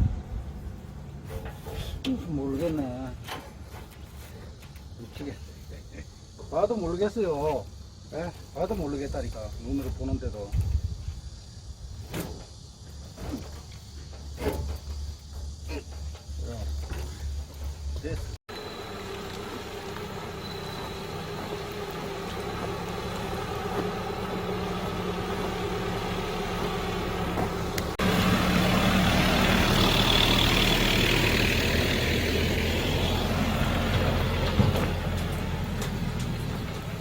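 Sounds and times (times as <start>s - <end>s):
vehicle engine running: 15.0s - 37.0s.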